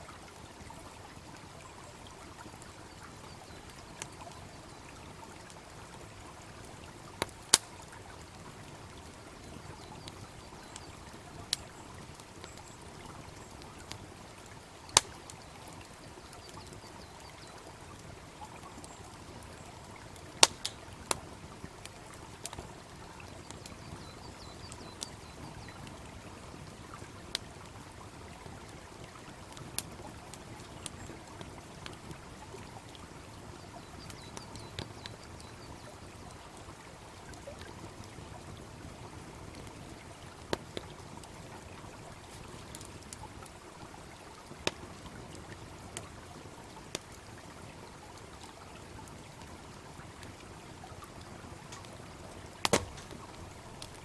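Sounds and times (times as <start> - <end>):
babbling brook: 0.0 - 54.0
wood fire crackling and popping: 6.6 - 33.0, 34.0 - 35.3, 37.3 - 46.2, 48.2 - 54.0.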